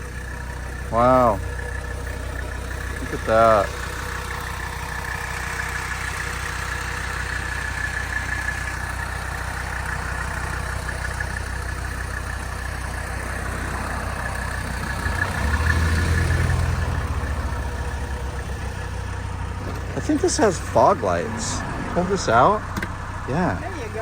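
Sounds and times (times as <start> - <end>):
diesel engine idling: 0.0 - 24.0.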